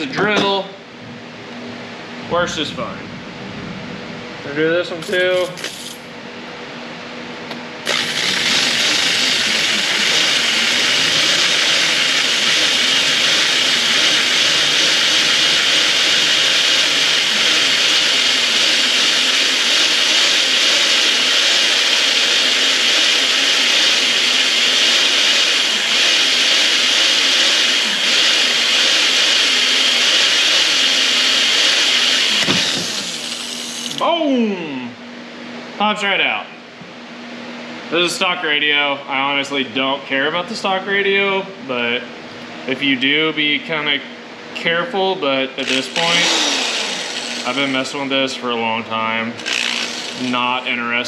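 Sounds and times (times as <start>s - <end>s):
electric drill whining: 7.8s - 34.0s, 45.6s - 47.8s, 49.4s - 50.4s.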